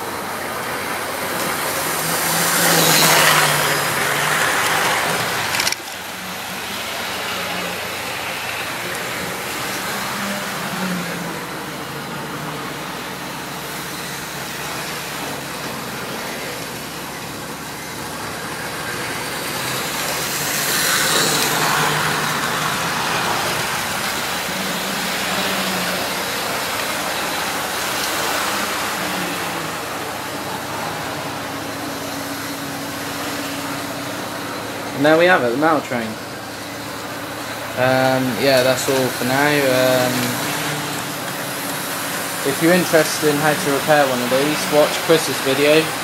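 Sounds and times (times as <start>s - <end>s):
model train motor whirring: 1.3s - 11.3s, 12.4s - 30.9s.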